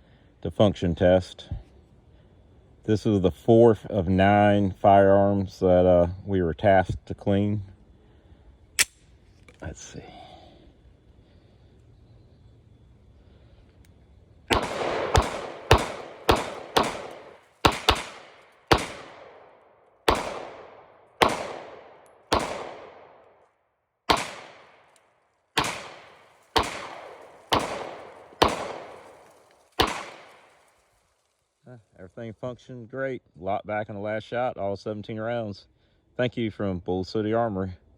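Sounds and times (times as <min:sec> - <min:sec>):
pistol shots with echo: 0:14.5 - 0:23.4, 0:24.1 - 0:24.9, 0:25.6 - 0:30.6.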